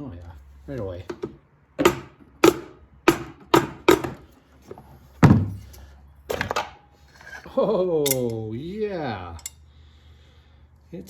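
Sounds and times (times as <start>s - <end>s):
hammer knocking on engine cover: 1.2s - 4.2s.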